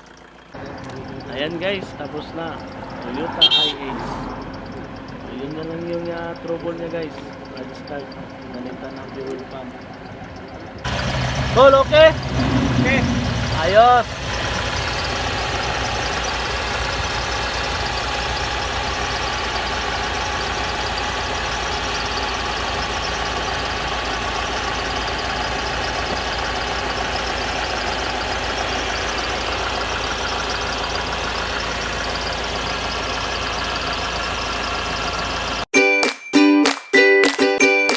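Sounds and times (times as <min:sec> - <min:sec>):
diesel engine idling: 0:00.0 - 0:35.7.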